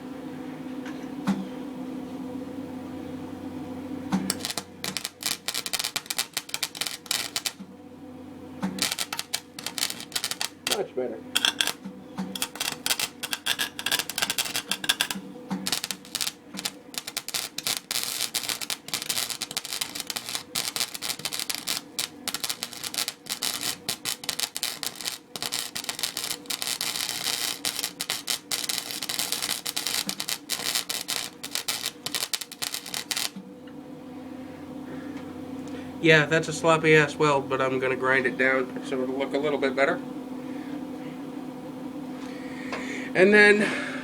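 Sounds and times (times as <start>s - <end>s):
welder arc crackling: 4.0s - 7.9s, 8.5s - 33.7s.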